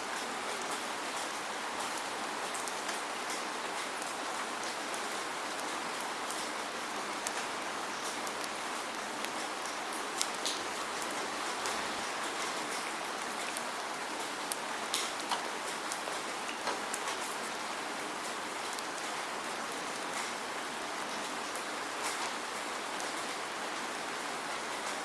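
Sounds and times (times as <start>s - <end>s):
steady rain hiss: 0.0s - 25.0s.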